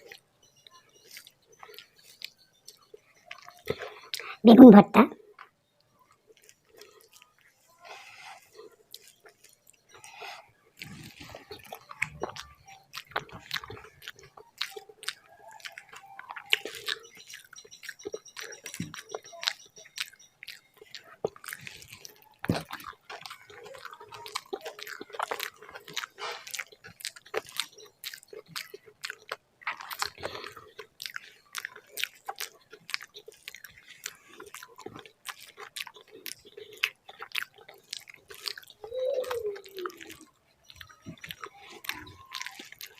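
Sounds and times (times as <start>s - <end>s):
wet chewing smacks: 0.0s - 4.4s, 5.3s - 42.9s
biting sounds: 0.0s - 4.7s, 5.3s - 42.9s.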